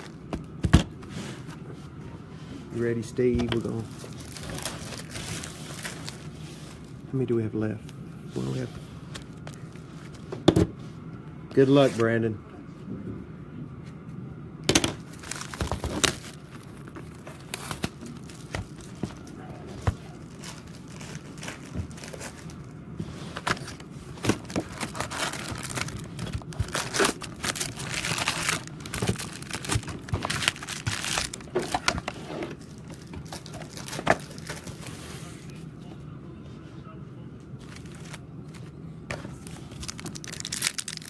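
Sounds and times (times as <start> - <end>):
plastic wrapping tearing and crinkling: 3.6 - 6.4, 15.0 - 22.7, 23.4 - 35.0, 37.6 - 38.6, 39.2 - 41.0.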